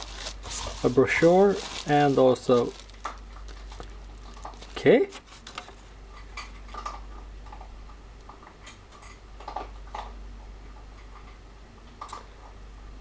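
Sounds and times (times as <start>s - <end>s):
packaging clicking and rustling: 0.0s - 7.0s.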